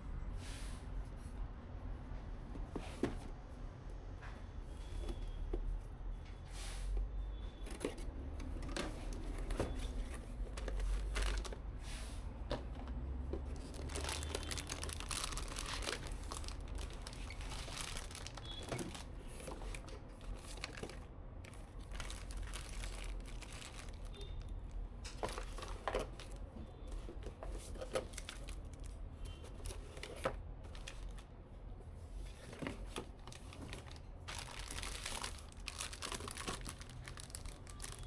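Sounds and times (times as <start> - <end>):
packaging rustles and light knocks: 7.6 - 11.7, 12.5 - 24.5, 25.1 - 31.3, 32.2 - 38.0
plastic crinkling and tearing: 8.6 - 11.6, 13.5 - 26.4, 27.7 - 31.2, 32.8 - 38.0.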